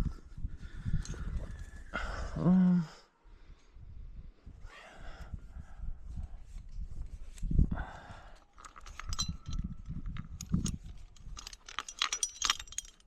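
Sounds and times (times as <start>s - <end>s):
metal climbing gear clinking: 0.8s - 1.8s, 8.2s - 13.0s.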